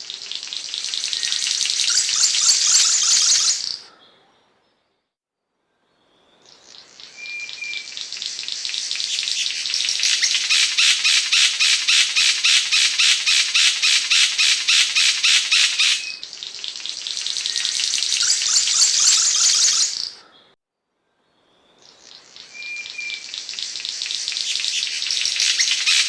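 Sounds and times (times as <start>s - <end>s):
bird harsh rasping chatter: 24.5s - 26.0s.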